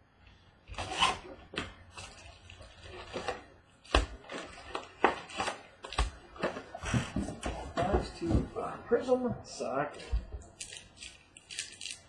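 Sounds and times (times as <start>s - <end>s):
wrappers and cardboard crinkling: 1.9s - 8.3s, 9.9s - 12.0s.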